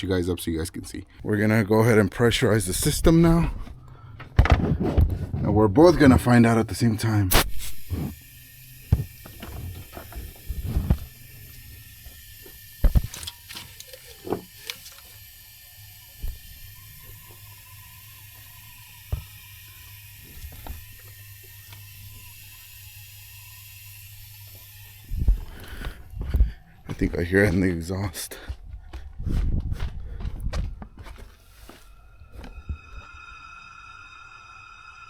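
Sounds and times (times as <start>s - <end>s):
clicks and knocks of tools: 12.8s - 15.2s.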